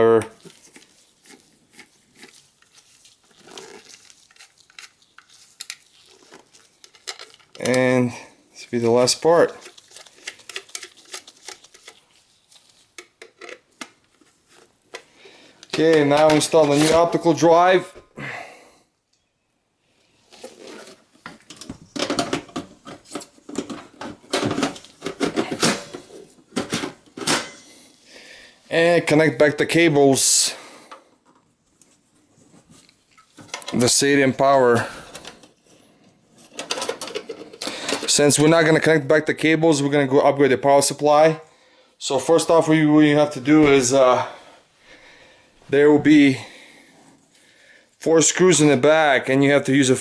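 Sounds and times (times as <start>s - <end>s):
screwdriver scraping: 0.4s - 7.9s, 9.4s - 12.1s.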